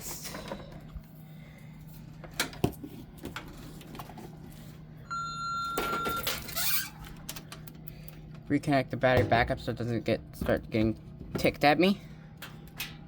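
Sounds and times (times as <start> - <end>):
fire alarm panel beep: 5.0 - 6.4.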